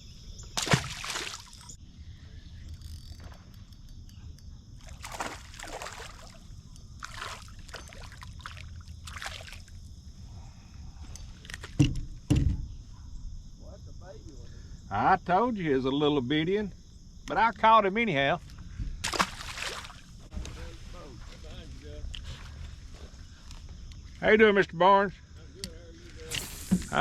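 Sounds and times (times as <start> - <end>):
insect drone: 0.0 - 27.0
water sloshing around boat: 0.6 - 1.8, 4.8 - 9.9, 18.4 - 21.5.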